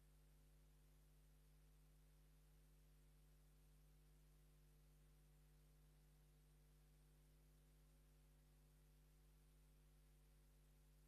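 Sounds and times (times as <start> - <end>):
faint steady hum and hiss: 0.0 - 11.0.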